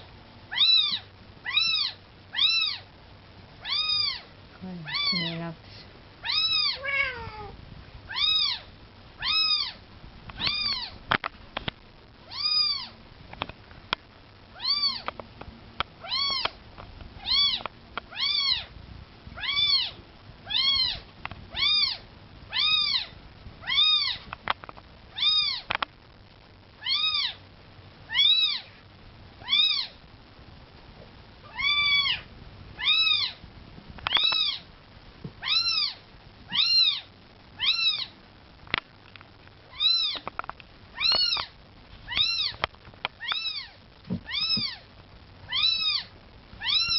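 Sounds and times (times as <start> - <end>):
kitten mewing: 4.9 - 5.3, 6.2 - 8.6, 45.5 - 46.9
faint clicks: 25.7 - 26.0.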